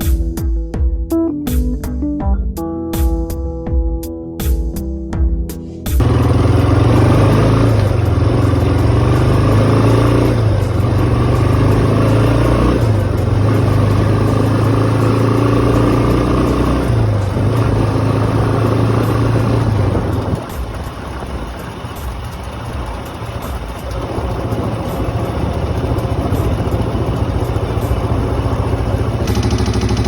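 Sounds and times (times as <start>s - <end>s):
atv engine revving: 6.0s - 30.0s.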